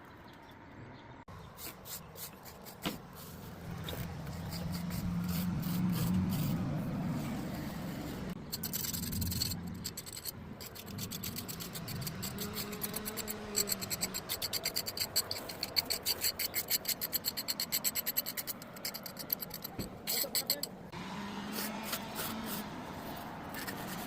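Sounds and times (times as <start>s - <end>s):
rhythmic back-and-forth scraping: 8.2s - 20.9s.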